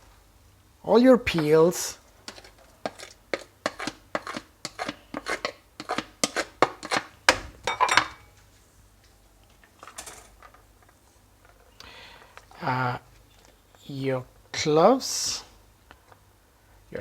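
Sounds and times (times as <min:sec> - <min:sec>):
utensils clattering in metal pot: 0:07.7 - 0:08.3.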